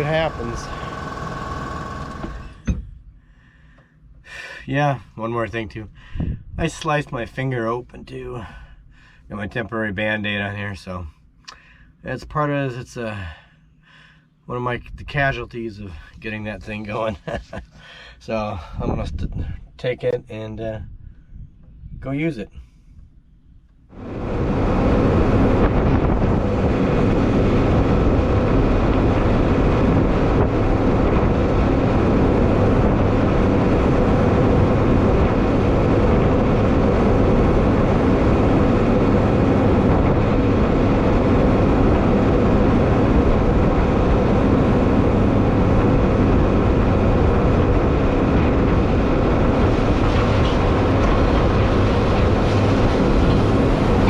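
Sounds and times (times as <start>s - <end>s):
tractor running under load: 0.0s - 2.6s.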